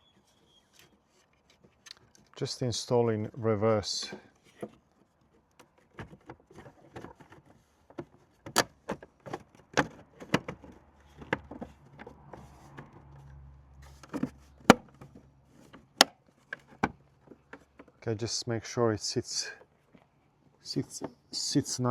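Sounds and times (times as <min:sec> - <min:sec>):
plastic parts clicking and knocking: 0:04.1 - 0:18.0.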